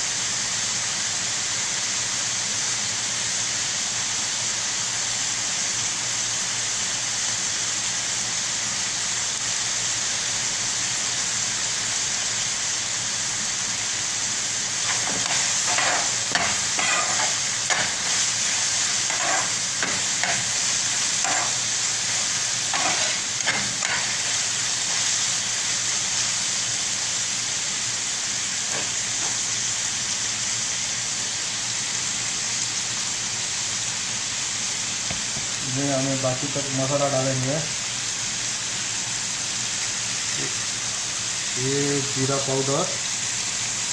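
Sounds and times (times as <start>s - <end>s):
food frying in oil: 0.0s - 43.9s
spatula scraping a pan: 14.8s - 25.4s.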